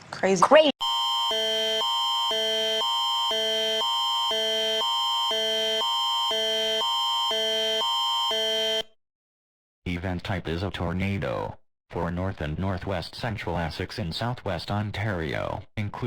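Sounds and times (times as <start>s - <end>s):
electronic alert tone: 0.8s - 8.9s.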